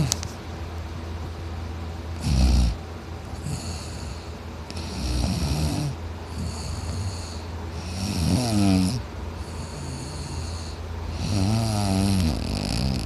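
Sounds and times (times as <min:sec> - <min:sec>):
man snoring loudly: 0:02.2 - 0:02.8, 0:03.4 - 0:13.0
hissing breaths: 0:02.2 - 0:13.0.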